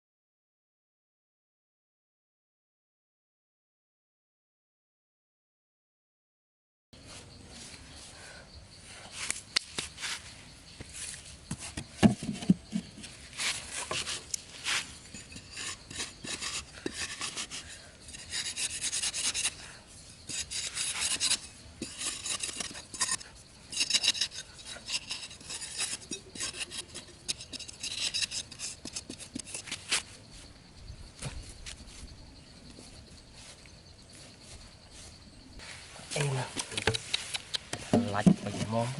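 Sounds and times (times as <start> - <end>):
rough scraping strokes: 9.2 - 30.5.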